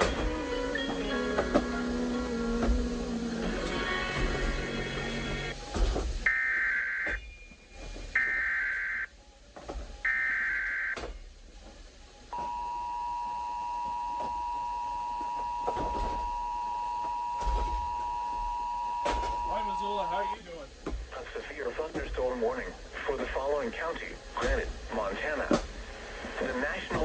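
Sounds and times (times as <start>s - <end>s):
screechy data tones: 6.3s - 7.2s, 8.2s - 9.1s, 10.1s - 11.0s, 12.4s - 20.4s
steady attention tone: 12.3s - 20.6s.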